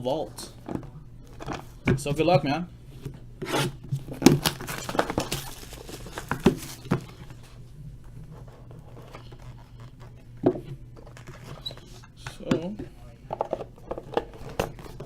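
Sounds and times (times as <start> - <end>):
packaging rustling: 3.6 - 7.6
packaging tearing and crinkling: 4.0 - 7.2.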